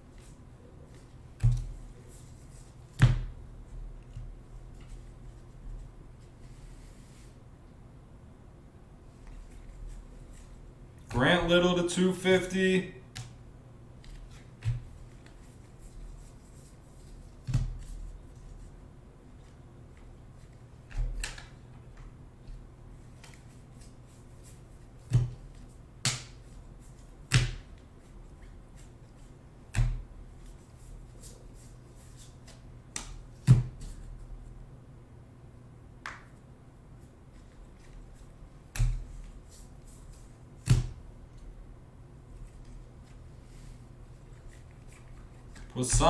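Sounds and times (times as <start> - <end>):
cards clicking and snapping: 20.9 - 21.6, 26.0 - 26.4.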